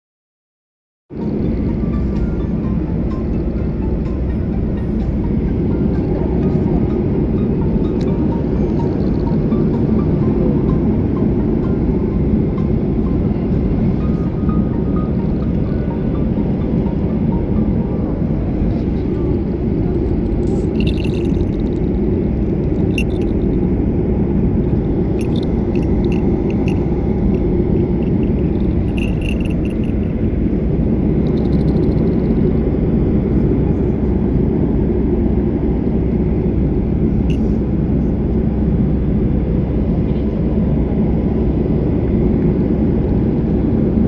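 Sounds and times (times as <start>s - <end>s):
airplane cabin rumble: 1.1s - 44.0s
faint clicks and jingles: 20.0s - 21.9s, 22.6s - 23.6s, 25.1s - 32.3s.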